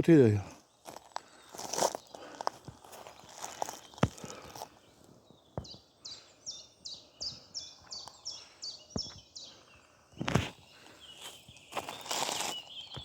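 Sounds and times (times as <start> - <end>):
songbird singing: 0.0 - 13.0
footsteps thumping: 2.6 - 4.6, 8.9 - 9.2.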